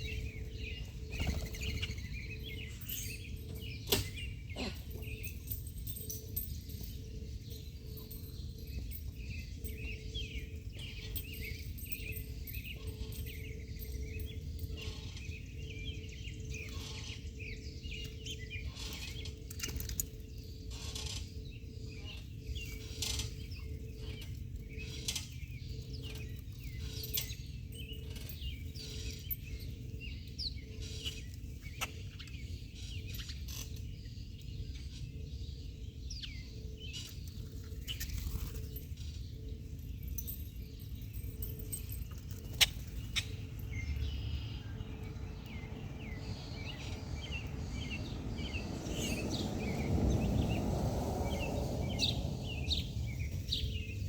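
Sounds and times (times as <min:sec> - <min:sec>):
small birds chirping: 0:00.0 - 0:54.0
steady low rumble: 0:43.0 - 0:54.0.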